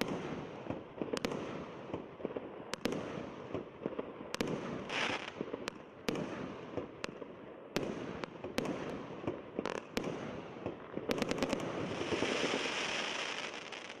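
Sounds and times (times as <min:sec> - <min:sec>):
firework crackling: 0:03.0 - 0:07.2, 0:09.6 - 0:14.0
firework hiss: 0:04.9 - 0:05.3, 0:11.2 - 0:14.0.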